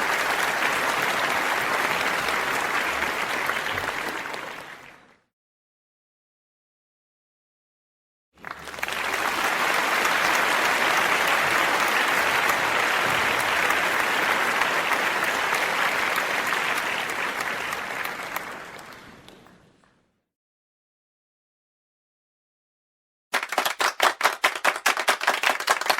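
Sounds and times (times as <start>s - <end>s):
audience applause: 0.0s - 5.2s, 8.4s - 19.8s, 23.4s - 25.9s.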